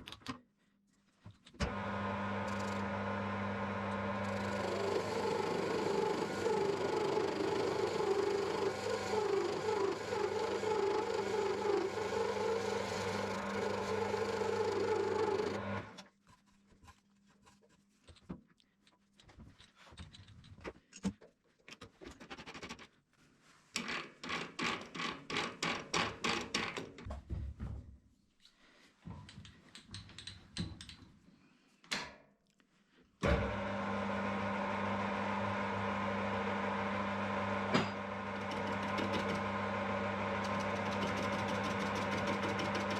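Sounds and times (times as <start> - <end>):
lathe motor humming: 1.6 - 16.0, 33.4 - 42.9
clicks and scrapes: 15.9 - 23.0.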